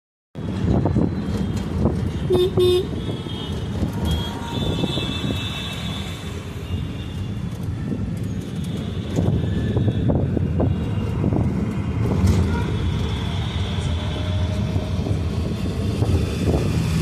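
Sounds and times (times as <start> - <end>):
road traffic rumble: 0.4 - 17.0
vehicle horn tooting: 2.2 - 7.0.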